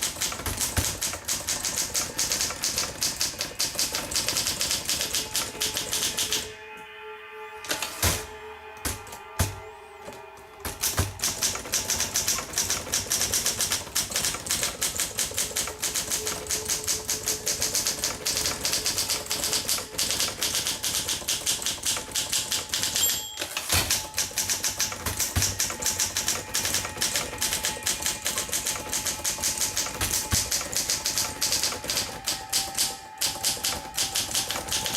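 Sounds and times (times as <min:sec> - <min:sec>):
manual typewriter typing: 0:00.0 - 0:06.5, 0:07.6 - 0:34.9
typewriter bell ring: 0:08.9 - 0:34.9.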